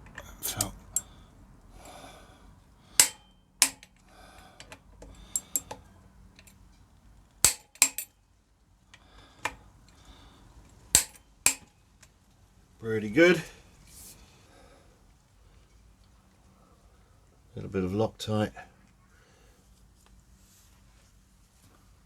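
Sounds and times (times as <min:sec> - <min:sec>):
torque wrench clicks: 0:03.0 - 0:05.8
quiet rustling: 0:12.2 - 0:22.0.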